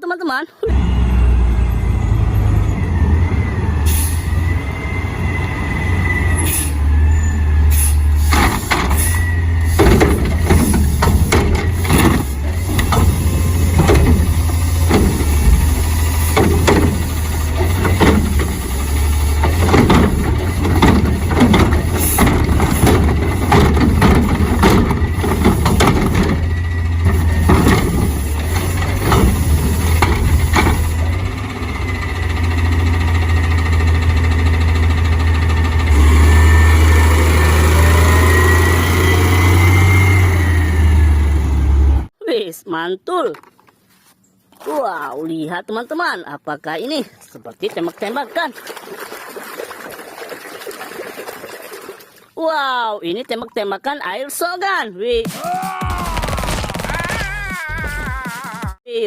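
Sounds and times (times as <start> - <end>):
hissing and clattering spray: 7.7 - 26.4.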